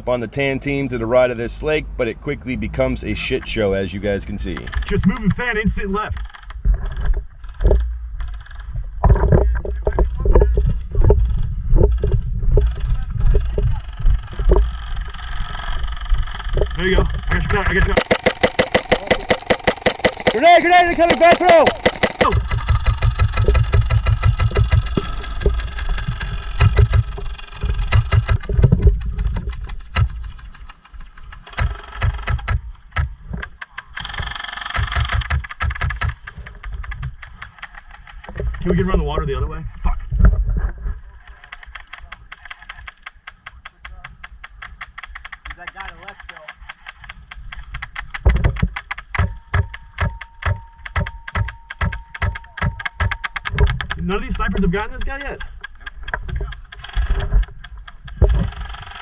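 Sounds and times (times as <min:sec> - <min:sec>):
airsoft guns firing: 0:17.3 - 0:27.1, 0:27.8 - 0:28.4, 0:31.5 - 0:33.1, 0:33.9 - 0:36.3.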